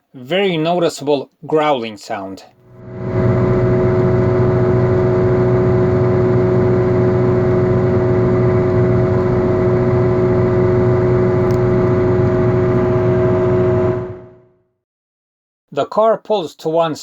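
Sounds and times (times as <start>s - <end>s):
wheel bearing growling: 2.6s - 14.3s
car driving low rumble: 2.6s - 14.4s.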